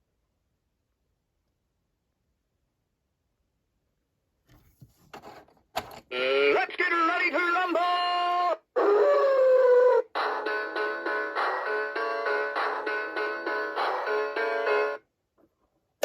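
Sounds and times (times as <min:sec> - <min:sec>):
voice wailing: 0:07.4 - 0:10.1.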